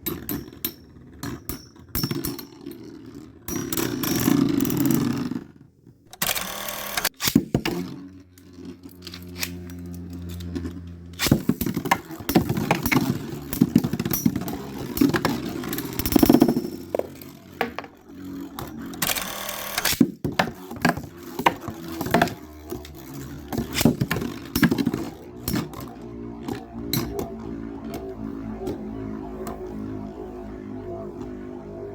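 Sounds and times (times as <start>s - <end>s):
spinning tops clicking and knocking: 0.0s - 5.5s, 6.2s - 28.9s
spinning tops whirring: 0.0s - 31.9s
spinning tops scraping: 6.2s - 30.0s.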